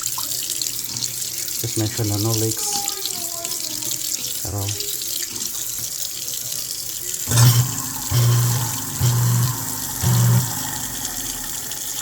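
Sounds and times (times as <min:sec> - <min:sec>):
faucet water running into sink: 0:00.0 - 0:12.0
short low hums: 0:07.3 - 0:11.7.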